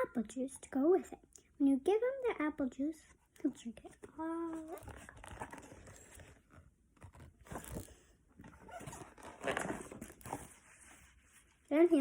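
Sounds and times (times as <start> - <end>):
paper pages rustling: 3.9 - 11.7.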